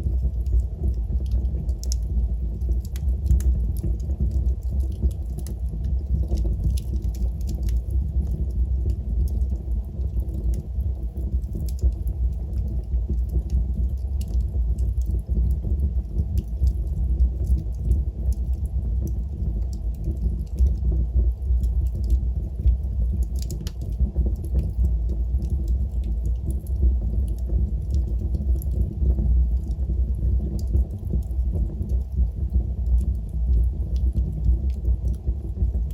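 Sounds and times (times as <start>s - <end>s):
fire crackling and snapping: 0.0s - 35.9s
low rumble of flames: 0.0s - 35.9s.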